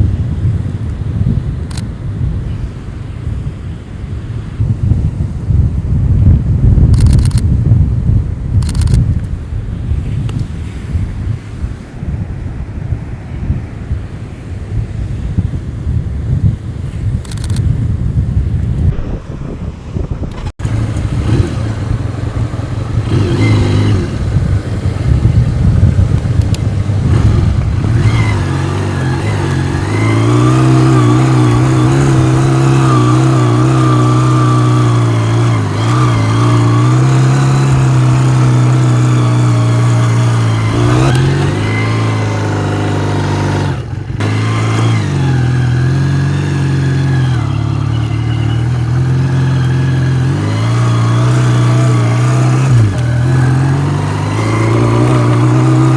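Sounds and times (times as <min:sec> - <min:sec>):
wind buffeting microphone: 0:00.0 - 0:55.9
vehicle engine running: 0:18.8 - 0:55.9.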